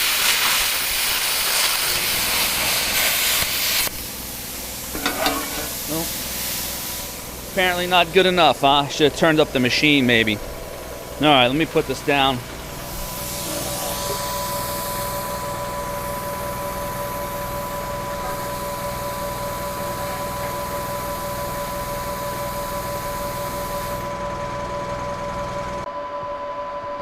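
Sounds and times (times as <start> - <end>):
machine hissing: 0.0 - 24.2
low engine rumble: 4.0 - 25.9
whining tones: 7.2 - 27.0.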